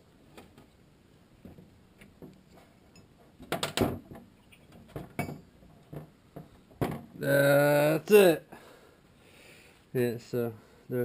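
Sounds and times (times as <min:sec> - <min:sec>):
metallic clattering and knocking: 0:02.9 - 0:07.1.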